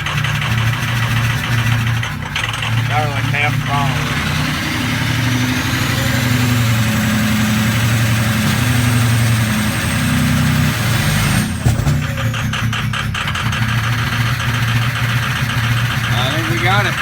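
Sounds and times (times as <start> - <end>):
diesel engine running rough: 0.0 - 17.0
sharp engine knocks: 8.3 - 17.0.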